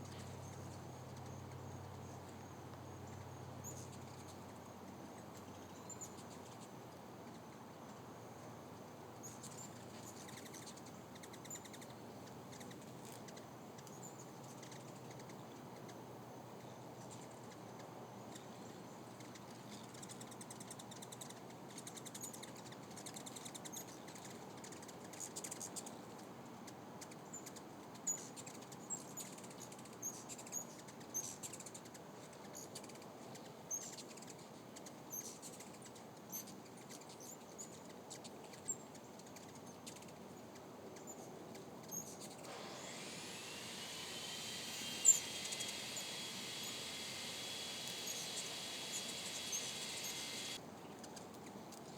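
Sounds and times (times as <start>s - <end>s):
hummingbirds chirping: 9.2s - 13.2s, 41.8s - 50.6s.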